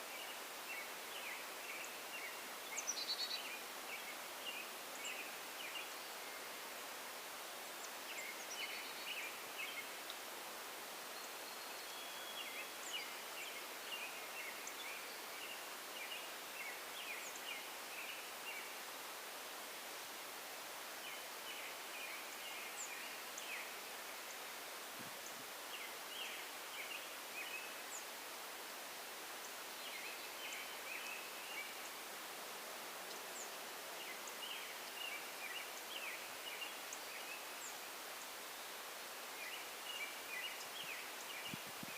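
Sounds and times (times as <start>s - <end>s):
outdoor background hiss: 0.0s - 41.9s
small birds chirping: 39.3s - 41.9s.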